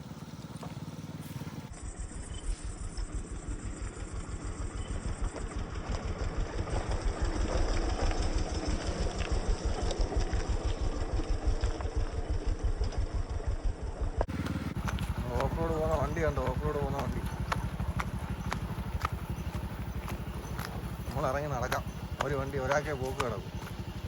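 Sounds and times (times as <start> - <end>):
small motorcycle engine running: 0.0 - 24.0.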